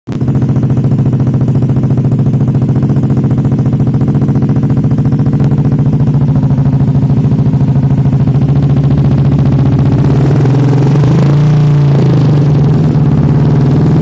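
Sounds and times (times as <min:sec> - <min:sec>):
scooter engine idling: 0:00.1 - 0:14.0.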